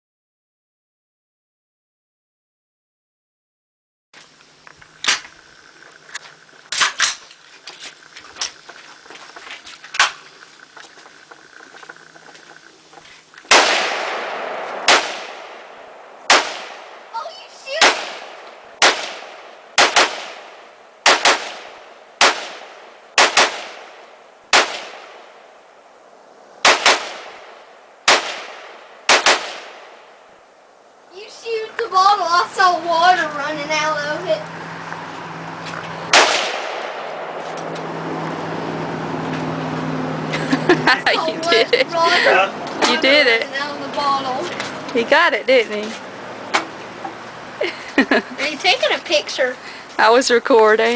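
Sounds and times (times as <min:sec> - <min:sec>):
loud rifle shots with echo: 0:13.5 - 0:17.1, 0:17.7 - 0:25.4, 0:26.6 - 0:30.1, 0:36.1 - 0:37.6
faint scattered gunshots: 0:13.5 - 0:25.4, 0:26.6 - 0:30.1, 0:36.1 - 0:37.6.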